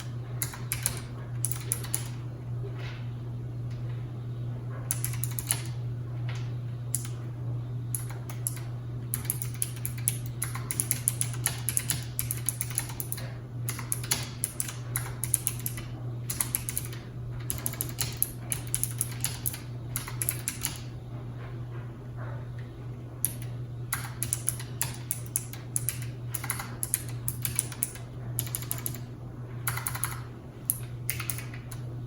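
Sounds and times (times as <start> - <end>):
mechanical keyboard typing: 0.0 - 2.2, 4.9 - 5.8, 8.0 - 20.9, 23.2 - 31.9
low background hum: 0.0 - 32.0.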